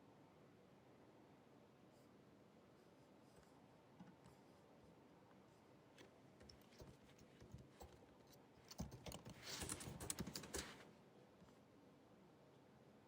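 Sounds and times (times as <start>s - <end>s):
laptop keyboard typing: 8.7s - 10.8s.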